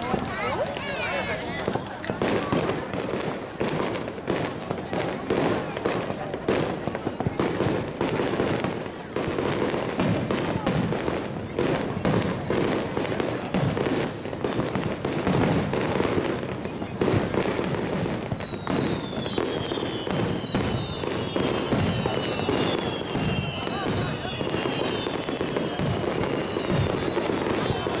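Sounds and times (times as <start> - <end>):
fireworks bangs and crackling: 0.0 - 28.0
whistling tones falling in pitch: 18.1 - 28.0.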